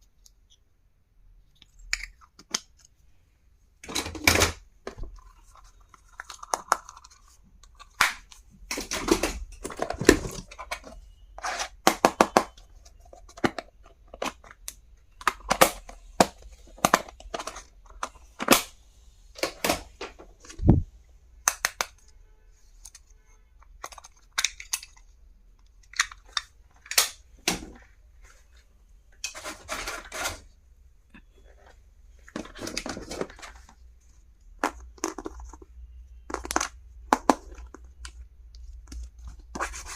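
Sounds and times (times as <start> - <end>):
small plastic items clicking: 34.6 - 39.1.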